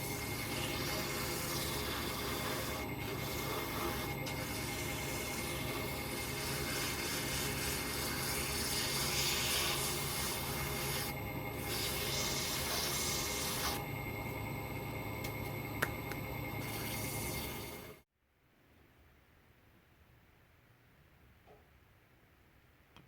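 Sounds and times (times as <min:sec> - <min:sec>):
sandpaper rubbing spinning wood: 0:00.0 - 0:13.8, 0:16.6 - 0:18.0
wood lathe humming: 0:00.0 - 0:18.0.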